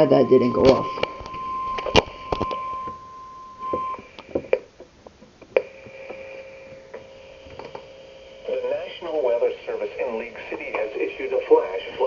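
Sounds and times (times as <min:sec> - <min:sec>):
high beep tone: 0:00.0 - 0:04.3
lower steady tone: 0:00.0 - 0:04.8, 0:05.5 - 0:10.8.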